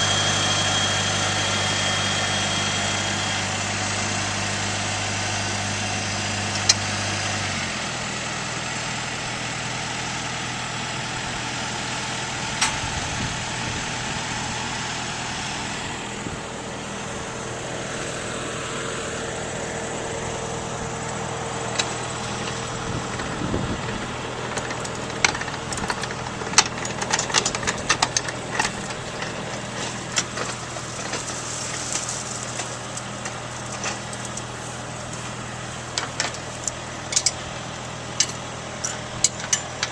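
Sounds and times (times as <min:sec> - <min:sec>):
farm machine engine running: 0:00.0 - 0:39.9
clicks and rattles: 0:23.9 - 0:34.5, 0:35.9 - 0:39.9.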